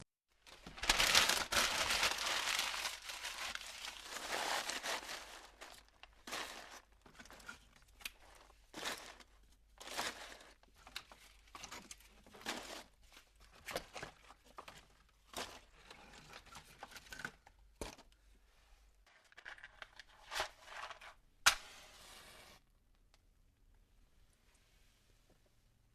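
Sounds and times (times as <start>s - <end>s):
leaves crunching and crackling: 0.5s - 6.8s.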